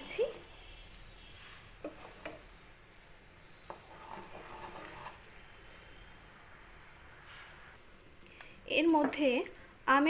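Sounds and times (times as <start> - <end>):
syrup stirring in a pan: 0.4 - 7.8.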